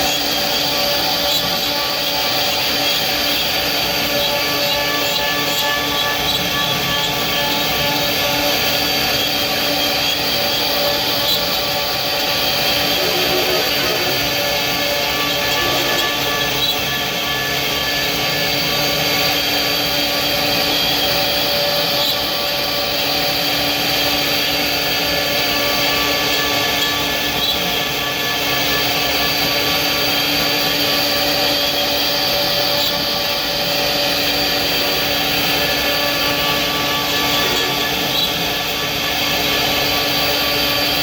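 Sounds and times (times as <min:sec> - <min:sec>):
power tool motor whine: 0:00.0 - 0:41.0.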